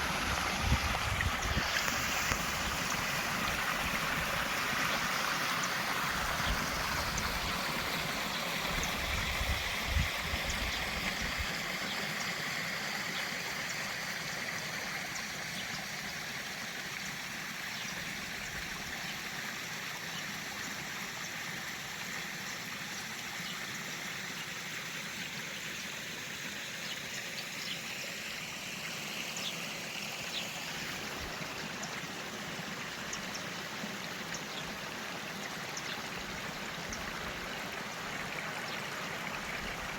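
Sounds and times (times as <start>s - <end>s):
waterfalls rushing: 0.0s - 11.9s.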